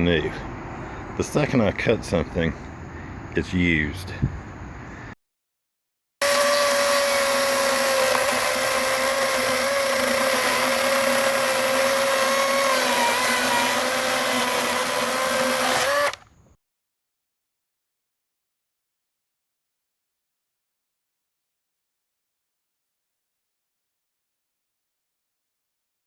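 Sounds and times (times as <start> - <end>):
electric chainsaw running: 6.2 - 16.2.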